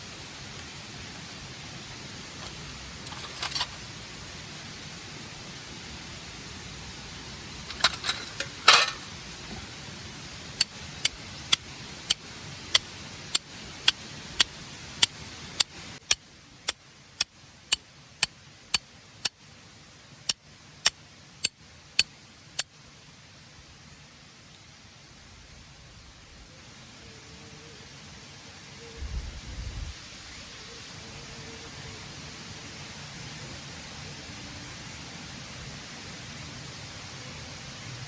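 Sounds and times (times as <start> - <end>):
short clatters: 2.4 - 3.8, 7.7 - 9.2.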